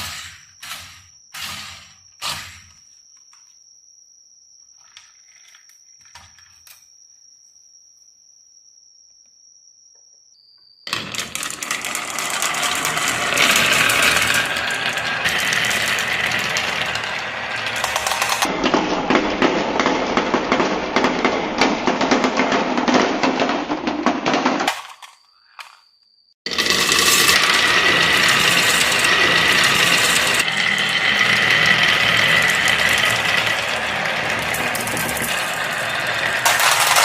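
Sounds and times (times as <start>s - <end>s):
marbles rattling down wooden run: 10.9s - 25.1s, 26.5s - 37.0s.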